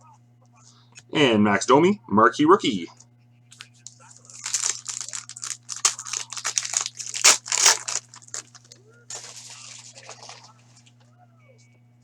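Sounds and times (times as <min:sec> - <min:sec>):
foil wrappers tearing and crinkling: 0:04.0 - 0:10.5.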